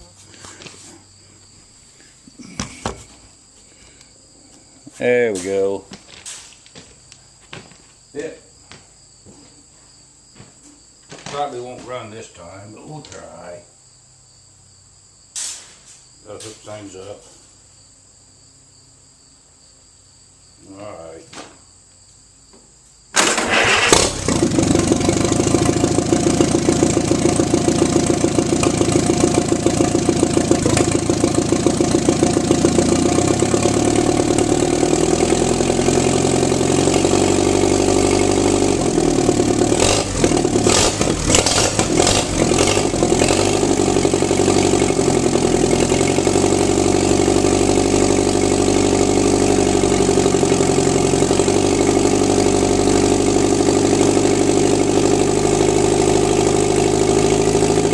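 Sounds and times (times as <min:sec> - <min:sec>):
tractor engine running: 0:23.2 - 0:57.9.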